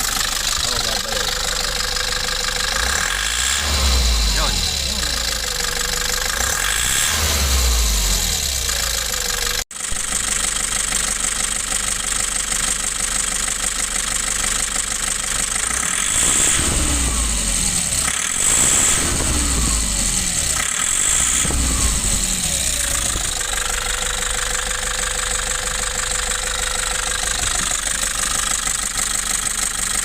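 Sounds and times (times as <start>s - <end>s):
diesel engine knocking: 8.6s - 16.1s, 17.9s - 30.0s.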